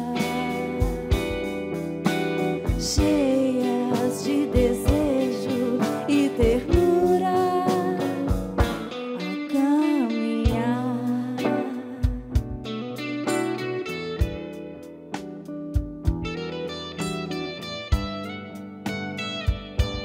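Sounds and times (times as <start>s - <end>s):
band playing a song: 0.0s - 9.2s, 12.0s - 20.0s
drum hits: 0.8s - 9.0s, 15.2s - 16.5s, 19.5s - 20.0s.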